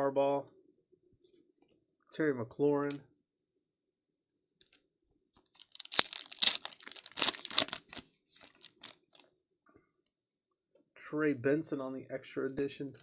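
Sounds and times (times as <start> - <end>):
foil wrapper tearing and crinkling: 5.5 - 9.2.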